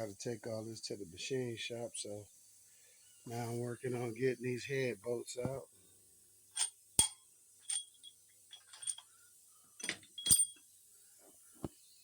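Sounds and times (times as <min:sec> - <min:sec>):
metallic clinks of hand tools: 0:06.5 - 0:09.1, 0:09.8 - 0:10.7.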